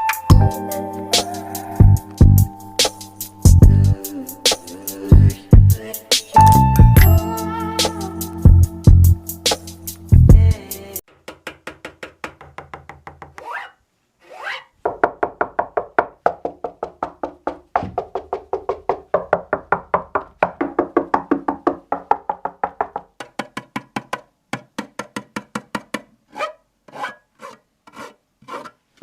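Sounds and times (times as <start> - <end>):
music through soundbar: 0.0 - 11.0.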